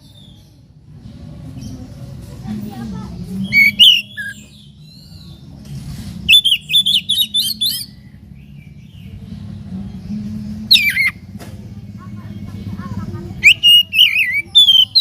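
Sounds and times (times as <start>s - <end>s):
bird singing whistled notes: 3.4s - 5.4s, 6.3s - 9.2s, 10.7s - 11.2s, 13.4s - 15.0s.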